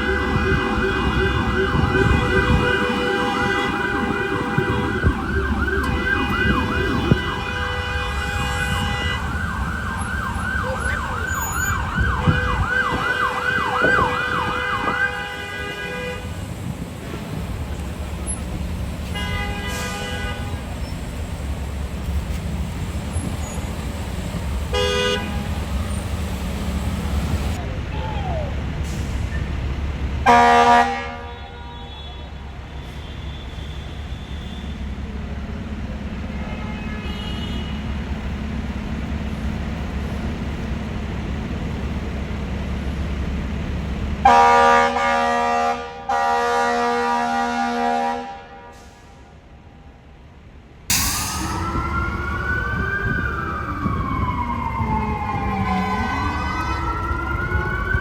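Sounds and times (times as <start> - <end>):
air horn blasts: 0.0 - 9.6, 12.2 - 16.4, 19.0 - 20.7, 24.7 - 25.5, 30.2 - 32.4, 36.4 - 37.8, 44.2 - 48.9, 50.9 - 53.2
siren wailing: 0.0 - 15.4, 50.9 - 58.0
truck engine rumble: 0.0 - 30.8, 32.4 - 45.2, 50.9 - 58.0.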